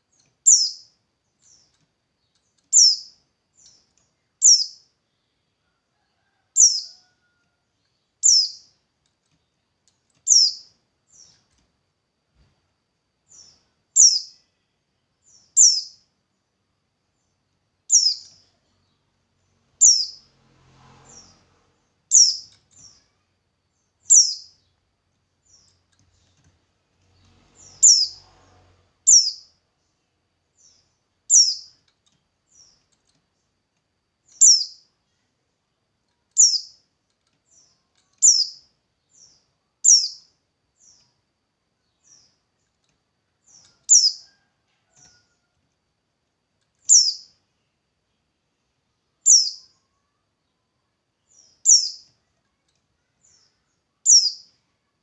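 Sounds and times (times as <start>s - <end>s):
bird chirping high: 0.4s - 1.7s, 2.7s - 3.8s, 4.4s - 4.9s, 8.2s - 8.7s, 10.2s - 11.3s, 13.3s - 14.5s, 15.3s - 16.0s, 17.9s - 18.6s, 19.7s - 20.3s, 22.1s - 24.7s, 27.2s - 29.6s, 30.6s - 31.8s, 34.3s - 34.9s, 36.4s - 36.8s, 37.5s - 41.0s, 46.9s - 47.4s, 49.2s - 50.2s, 51.3s - 52.1s, 53.2s - 54.6s.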